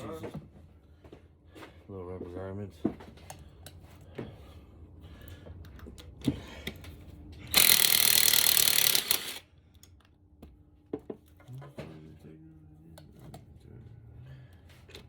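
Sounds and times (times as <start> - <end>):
hand tools clicking on metal: 7.5 - 9.4
power tool burst: 7.5 - 9.4.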